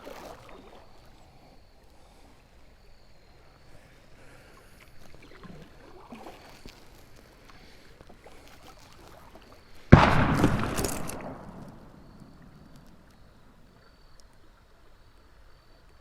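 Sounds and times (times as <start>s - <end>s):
loud explosion echoing: 9.9s - 13.1s.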